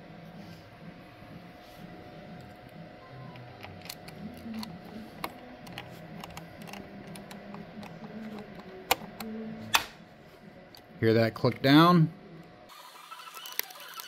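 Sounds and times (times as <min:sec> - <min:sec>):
screwdriver ticking and clicking: 0:03.4 - 0:09.3.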